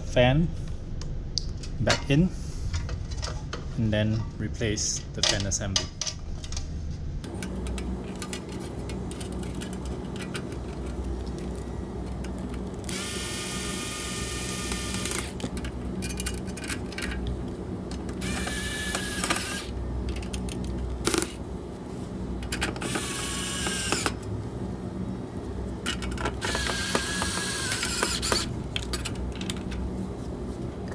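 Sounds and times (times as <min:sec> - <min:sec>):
cordless drill driving screws: 0:07.3 - 0:17.2, 0:18.0 - 0:19.7, 0:22.4 - 0:24.3, 0:25.9 - 0:29.6.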